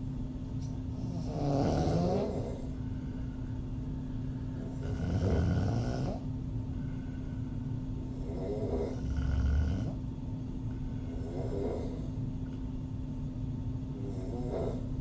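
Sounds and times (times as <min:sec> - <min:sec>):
steady low hum: 0:00.0 - 0:15.0
woman snoring: 0:01.0 - 0:02.8, 0:04.6 - 0:06.2, 0:08.2 - 0:10.0, 0:11.1 - 0:12.1, 0:14.0 - 0:15.0.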